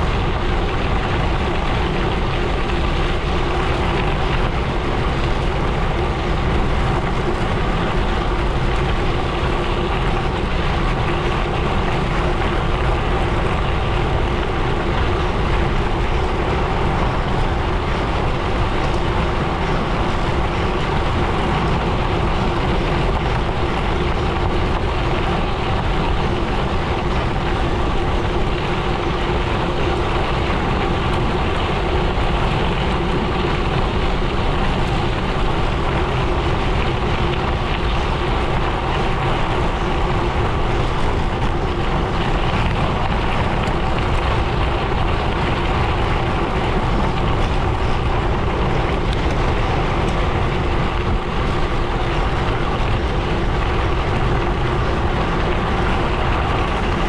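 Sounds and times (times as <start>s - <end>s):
wind on microphone: 0.0s - 57.0s.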